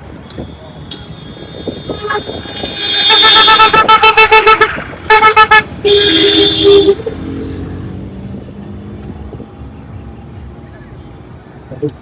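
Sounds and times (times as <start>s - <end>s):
faint road noise: 0.0s - 12.0s
vehicle horn beeping: 0.4s - 7.0s.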